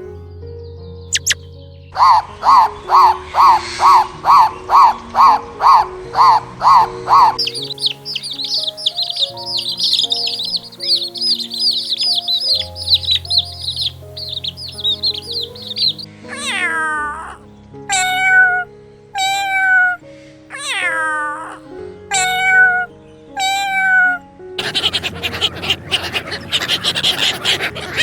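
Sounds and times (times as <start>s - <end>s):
background music: 0.0s - 28.0s
birds chirping: 0.0s - 28.0s
cat meowing: 2.0s - 28.0s
noisy panting: 24.6s - 28.0s.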